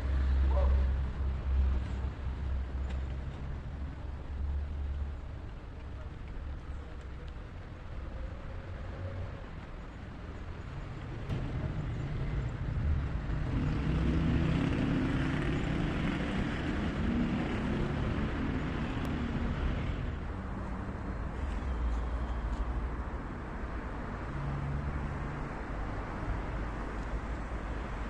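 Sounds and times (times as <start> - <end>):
vehicle engine passing by: 11.3 - 20.3.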